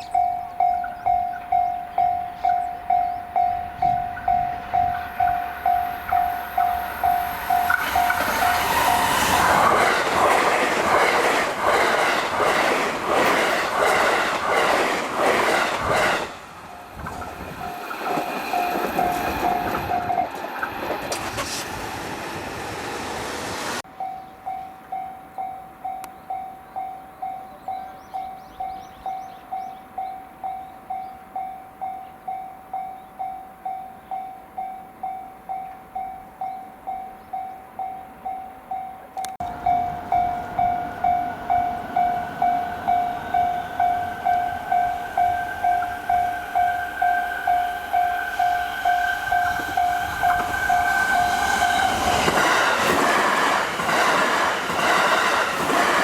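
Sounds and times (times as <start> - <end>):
level crossing bell ringing: 0.0 - 9.4, 24.0 - 51.6
train wheels clacking on rails: 0.0 - 22.2, 39.2 - 56.0.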